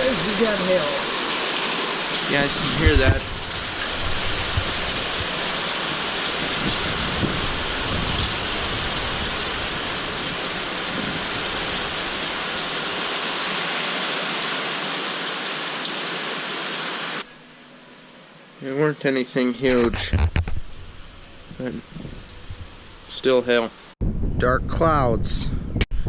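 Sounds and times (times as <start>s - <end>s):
hail and rain pattering: 0.0s - 17.2s.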